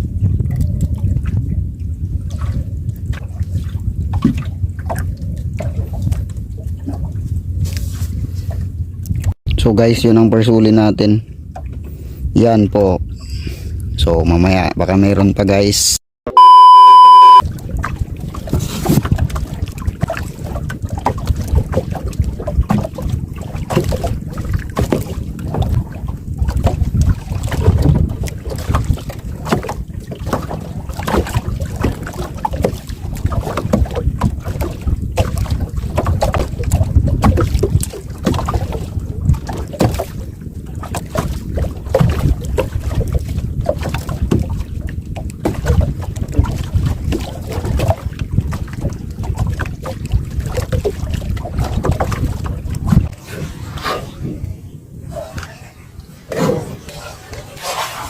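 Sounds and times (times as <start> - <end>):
steady rumble: 0.0 - 9.6
wind buffeting microphone: 0.0 - 14.8, 17.4 - 58.0
small knocks and splashes: 2.1 - 9.4, 17.4 - 53.2
loud electronic beep: 16.3 - 17.4.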